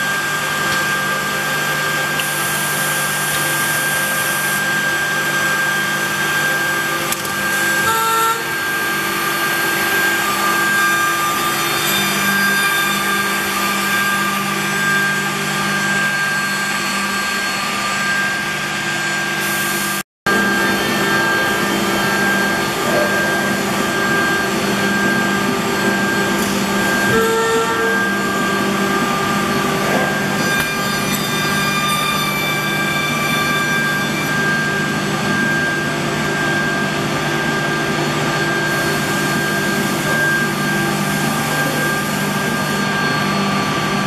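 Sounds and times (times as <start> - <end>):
machine motors whining: 0.0 - 44.0
wood cutting: 0.0 - 44.0.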